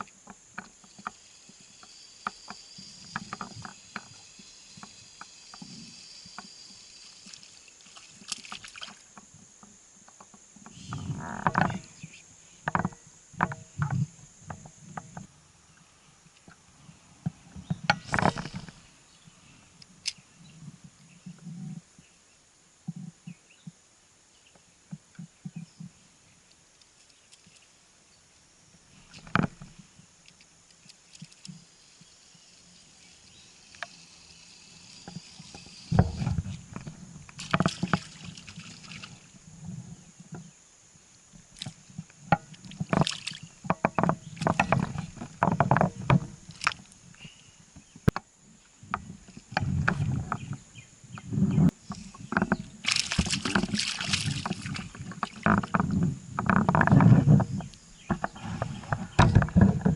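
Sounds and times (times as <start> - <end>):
water splashing: 7.1 - 9.1, 37.4 - 39.3, 42.6 - 43.5, 52.8 - 55.7.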